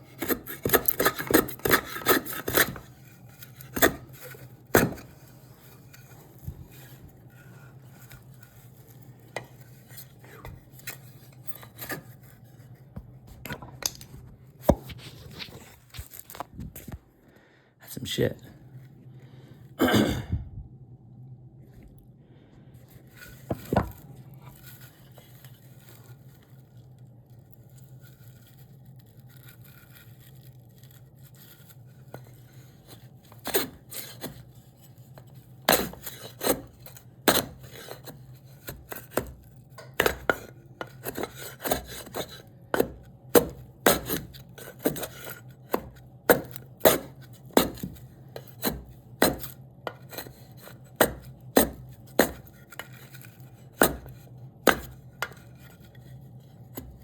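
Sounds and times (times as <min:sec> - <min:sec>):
chisel knocking on wood: 0:04.7 - 0:05.1, 0:38.7 - 0:45.1, 0:45.7 - 0:50.3, 0:51.0 - 0:52.9, 0:53.8 - 0:55.4.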